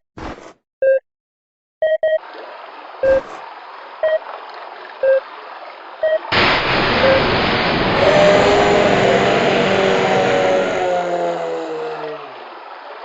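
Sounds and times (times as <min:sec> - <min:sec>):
passing train rushing: 0:06.4 - 0:12.2.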